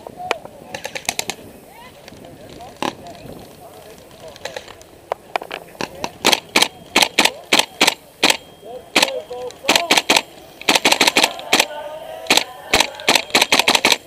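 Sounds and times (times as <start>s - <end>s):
airsoft guns firing: 5.8s - 14.0s
distant shouting: 6.7s - 14.0s.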